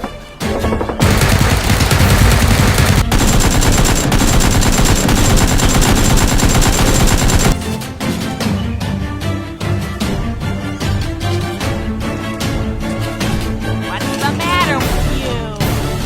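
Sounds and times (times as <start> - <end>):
rapid automatic gunfire: 0.6 - 7.6.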